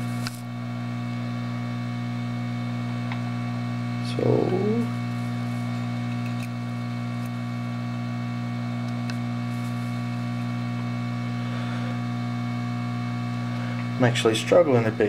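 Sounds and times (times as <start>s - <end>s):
electrical mains hum: 0.0s - 15.0s.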